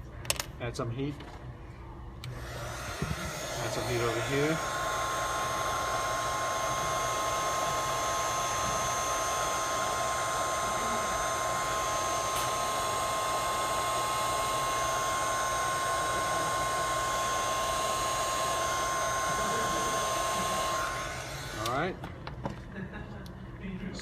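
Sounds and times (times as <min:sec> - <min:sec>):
hot-air blower whining: 0:01.8 - 0:22.9.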